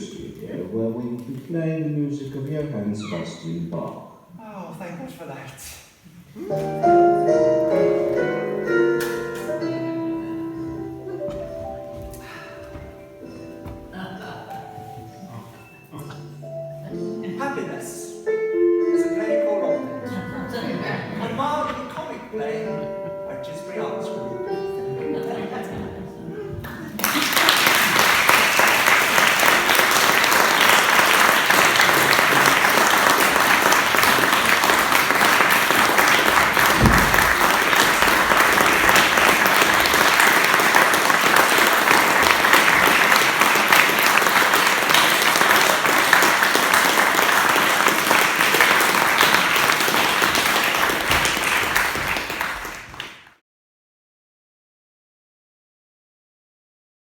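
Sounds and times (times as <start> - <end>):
audience applauding: 26.5 - 53.4
low thump: 36.7 - 37.4.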